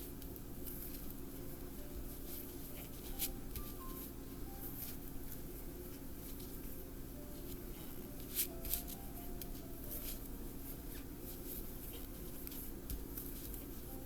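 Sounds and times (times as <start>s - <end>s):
crochet hook and yarn rustling: 8.2s - 14.0s.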